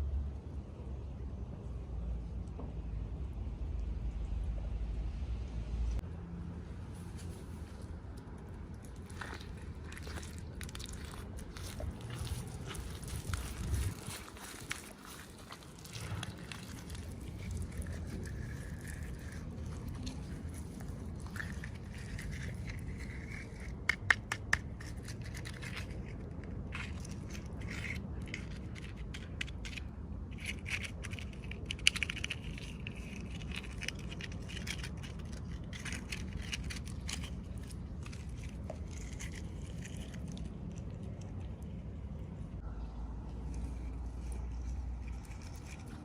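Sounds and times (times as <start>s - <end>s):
steady low hum: 0.0s - 46.0s
plastic packaging crinkling: 8.8s - 22.7s.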